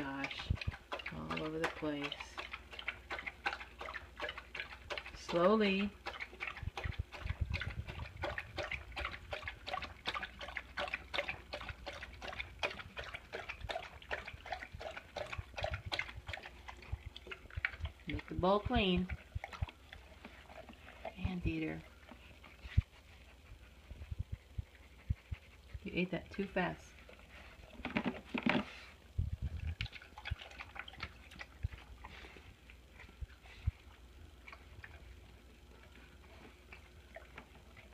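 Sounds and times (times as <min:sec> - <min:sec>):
dog licking food bowl: 0:00.0 - 0:37.9.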